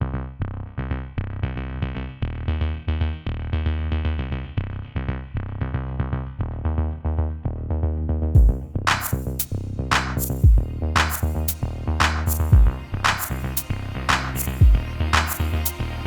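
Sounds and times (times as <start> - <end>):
electronic music with heavy bass: 8.4 - 16.0.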